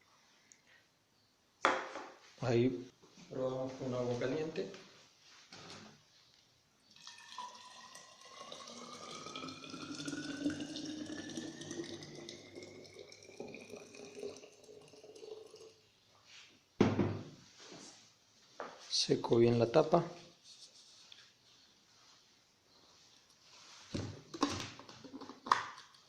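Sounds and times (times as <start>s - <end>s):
water pouring into vessel: 6.9s - 15.9s.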